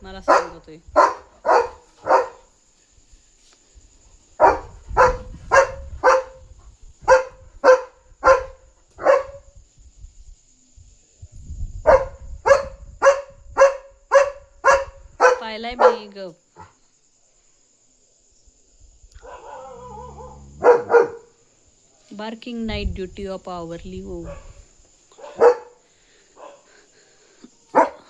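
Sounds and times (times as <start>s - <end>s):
dog barking: 0.2s - 2.5s, 4.4s - 9.5s, 11.9s - 16.8s, 19.2s - 21.3s, 24.2s - 25.8s, 26.4s - 26.7s, 27.7s - 28.0s.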